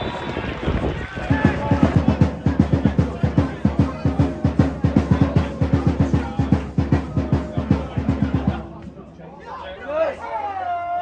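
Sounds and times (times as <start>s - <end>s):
drum beaten in fast rhythm: 1.2s - 9.1s.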